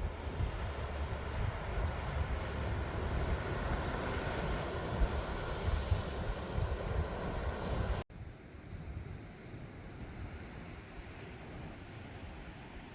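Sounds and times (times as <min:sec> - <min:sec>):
wind buffeting microphone: 0:00.0 - 0:08.0.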